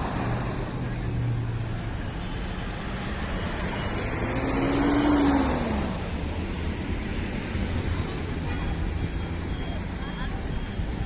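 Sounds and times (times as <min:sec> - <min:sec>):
city street traffic: 0:00.0 - 0:11.0.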